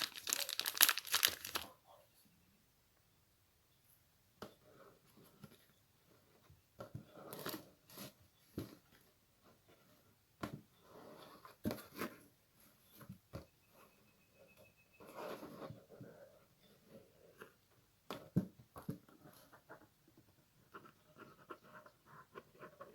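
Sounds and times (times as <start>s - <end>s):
rustling and crinkling: 0.0s - 2.0s.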